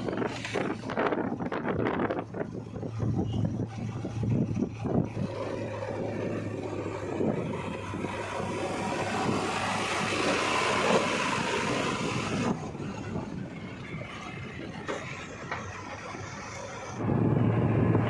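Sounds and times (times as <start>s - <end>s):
diesel engine humming: 0.0s - 18.0s.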